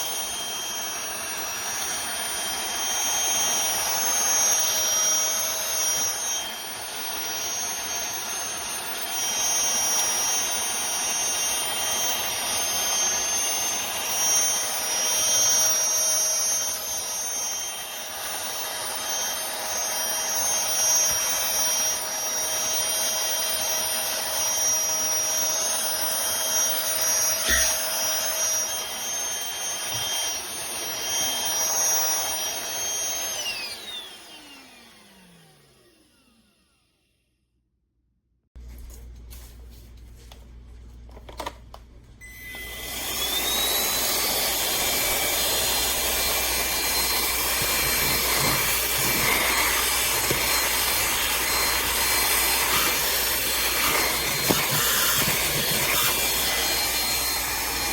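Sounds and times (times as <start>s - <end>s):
handheld vacuum cleaner running: 0.0s - 37.2s, 42.2s - 57.9s
vacuum motor winding down: 0.0s - 37.2s, 42.2s - 57.9s.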